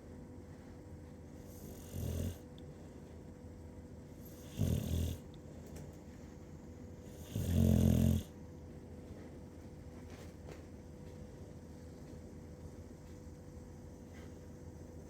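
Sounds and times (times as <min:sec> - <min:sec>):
low-pitched snoring: 0:01.4 - 0:02.4, 0:04.2 - 0:05.2, 0:07.1 - 0:08.3.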